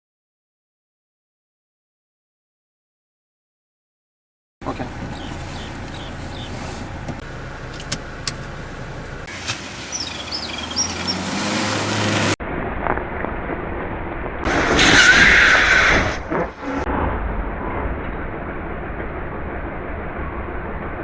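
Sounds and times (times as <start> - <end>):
road and engine noise: 4.6 - 21.0.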